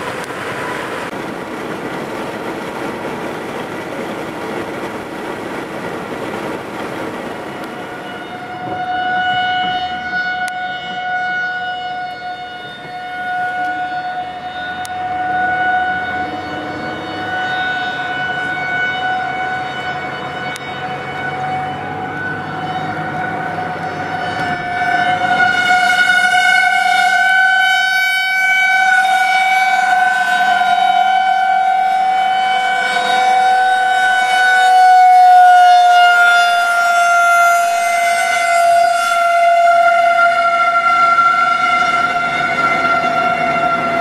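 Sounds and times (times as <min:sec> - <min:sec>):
rushing noise: 0:00.0 - 0:08.8, 0:28.8 - 0:35.0
warning siren wailing: 0:05.2 - 0:44.0.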